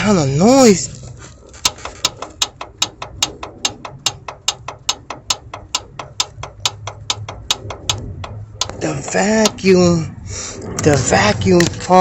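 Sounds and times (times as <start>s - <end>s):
engine idling: 0.0s - 12.0s
steady low hum: 0.0s - 12.0s
sharp engine knocking tick: 1.6s - 9.8s.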